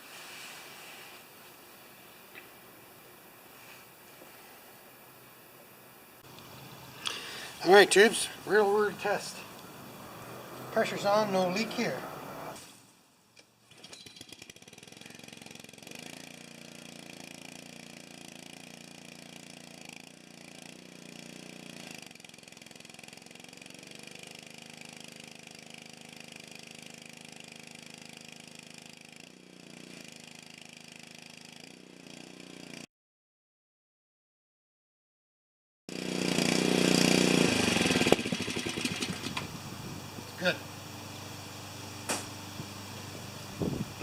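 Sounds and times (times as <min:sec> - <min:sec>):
pressure washer engine running: 0:14.4 - 0:32.6, 0:35.9 - 0:44.0.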